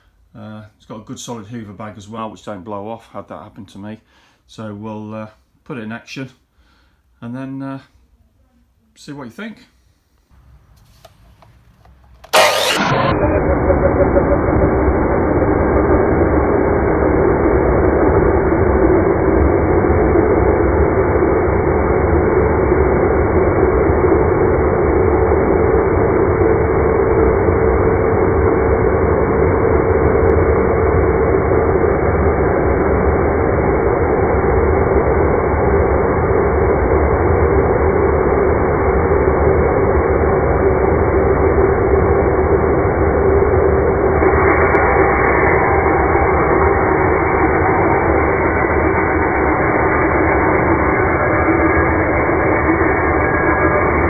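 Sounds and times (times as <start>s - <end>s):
mitre saw motor running: 12.2s - 15.9s, 44.7s - 54.0s.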